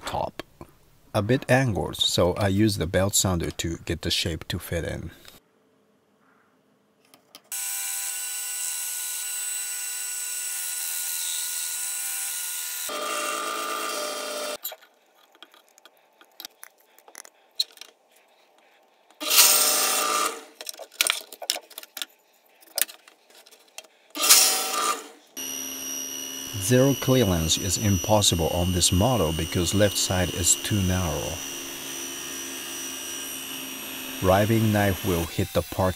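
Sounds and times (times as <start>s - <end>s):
belt sander whining: 7.5s - 14.6s, 19.1s - 20.6s, 24.1s - 35.9s
handling clicks and knocks: 20.6s - 24.0s
coarse sanding bursts: 26.5s - 31.8s, 34.1s - 35.9s.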